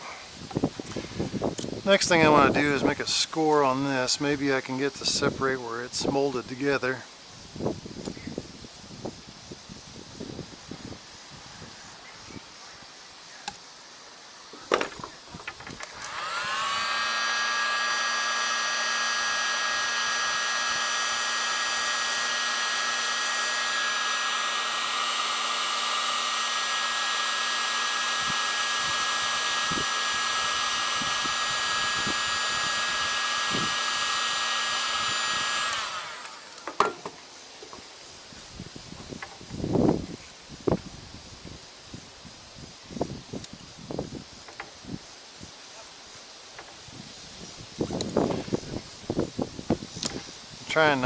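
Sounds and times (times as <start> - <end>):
power tool motor whining: 14.6 - 37.8.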